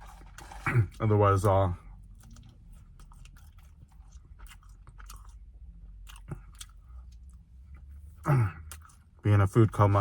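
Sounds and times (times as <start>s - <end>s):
person chewing food: 1.9s - 9.2s.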